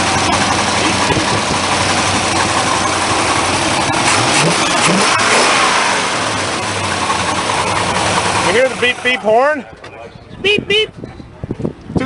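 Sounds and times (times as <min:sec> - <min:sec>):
engine running with lifter clatter: 0:00.0 - 0:10.0.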